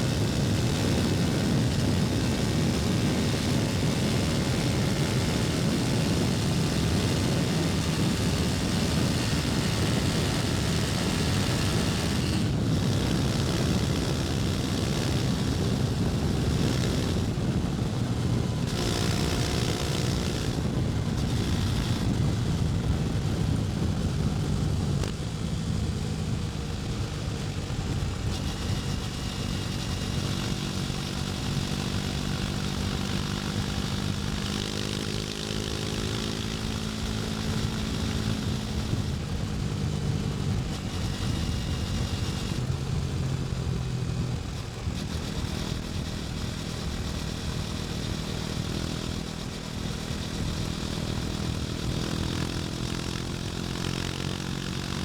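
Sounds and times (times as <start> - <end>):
motorcycle engine running: 0.0 - 55.0.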